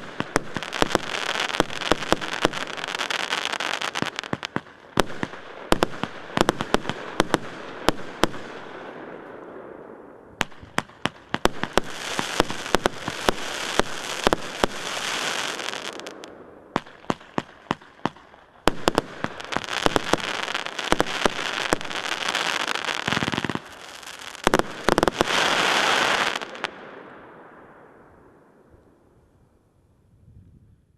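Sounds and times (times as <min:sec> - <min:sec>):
firework crackling: 0:00.0 - 0:08.6, 0:10.4 - 0:26.8
firework shots and bangs: 0:00.0 - 0:08.8.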